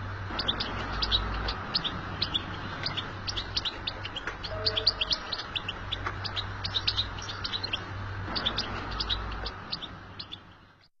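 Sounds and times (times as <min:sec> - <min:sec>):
bird twittering: 0:00.3 - 0:10.9.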